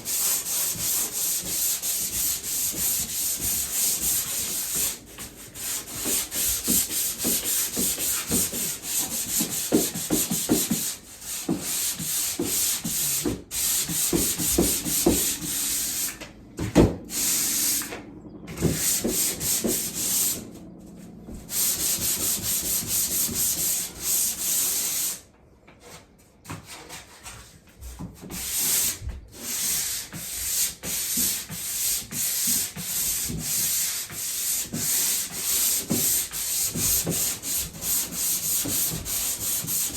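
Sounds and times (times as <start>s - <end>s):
sandpaper rasping on drywall: 0.0s - 16.2s, 17.1s - 17.9s, 18.6s - 20.4s, 21.4s - 25.2s, 26.7s - 39.9s.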